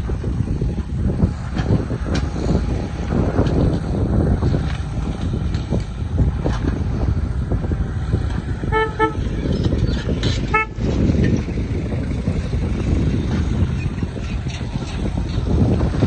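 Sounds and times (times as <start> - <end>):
heavy machinery engine rumbling: 0.0 - 16.0
vehicle horn toots: 8.7 - 9.4, 10.5 - 10.9.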